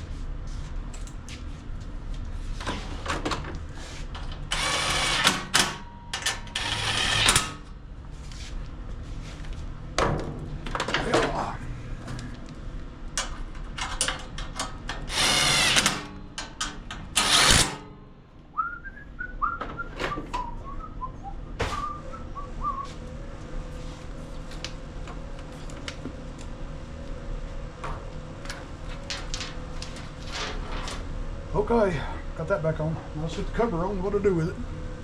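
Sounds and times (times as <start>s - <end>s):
cordless drill bursts: 4.5s - 5.5s, 15.1s - 16.1s, 17.2s - 17.8s
clicks of tools and metal: 13.2s - 17.9s
person whistling: 18.6s - 23.0s.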